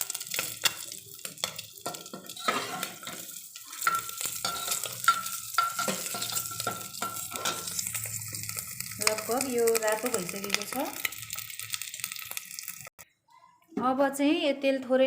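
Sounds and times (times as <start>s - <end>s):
oil sizzling: 0.0s - 13.0s
utensil scraping and knocking pot: 0.3s - 9.2s.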